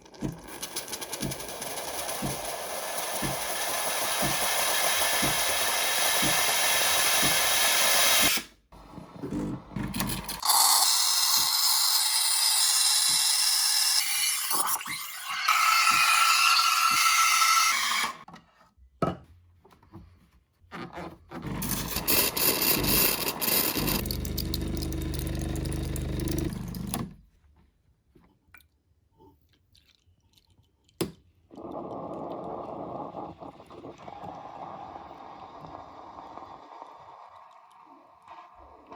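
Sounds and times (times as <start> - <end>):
coffee machine hissing: 0.4 - 8.5, 9.4 - 18.2, 21.5 - 27.0, 31.7 - 38.9.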